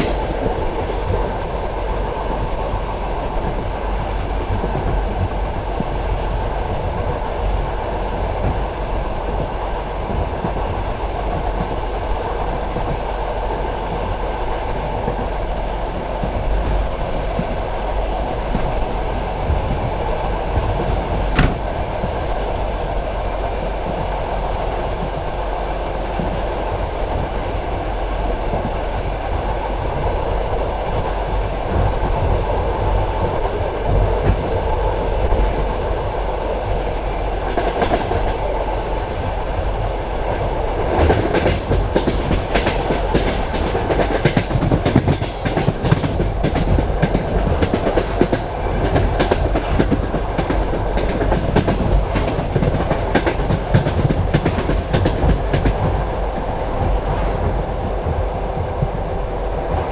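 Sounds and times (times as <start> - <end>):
train wheels rumbling on rails: 0.0 - 59.9.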